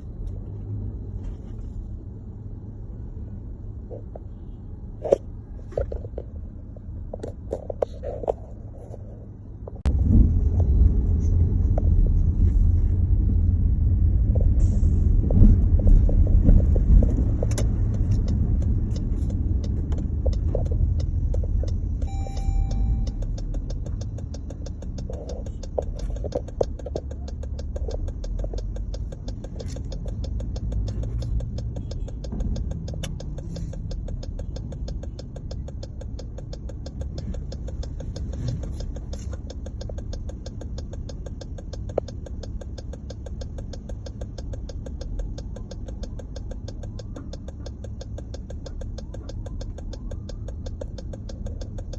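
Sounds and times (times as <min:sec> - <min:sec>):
car rumbling on the move: 0:00.0 - 0:51.9
short high beep: 0:22.0 - 0:23.2.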